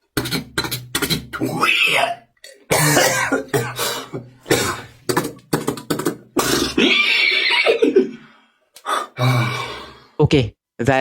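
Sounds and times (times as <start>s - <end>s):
beatboxing mouth sound effects: 0.0s - 2.2s, 2.9s - 6.9s.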